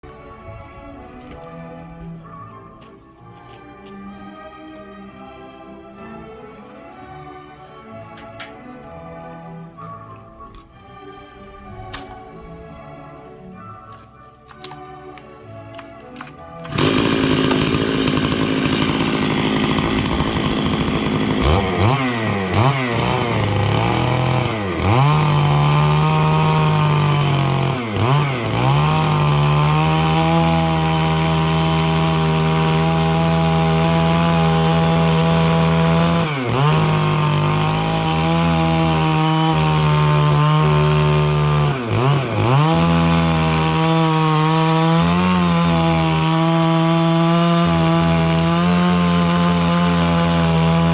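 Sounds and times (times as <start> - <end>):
chainsaw cutting wood: 16.2 - 50.9.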